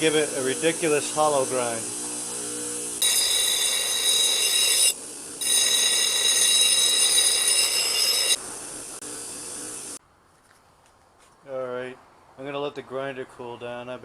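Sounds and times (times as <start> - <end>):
blade grinding on power grinder: 0.0 - 8.4
power grinder running: 0.0 - 9.0.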